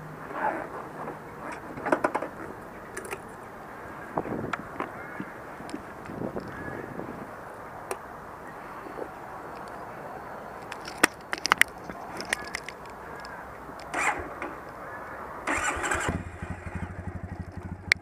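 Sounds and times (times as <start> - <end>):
electric starter cranking: 13.9 - 14.4, 15.5 - 16.8
motorcycle engine idling: 15.5 - 18.0.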